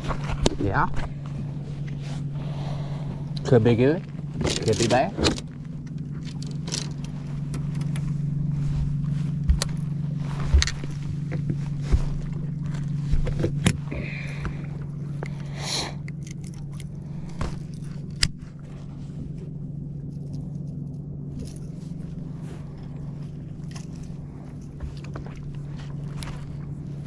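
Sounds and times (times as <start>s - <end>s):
electric trolling motor humming: 0.0s - 27.0s
gear clicking and knocking: 4.4s - 8.1s.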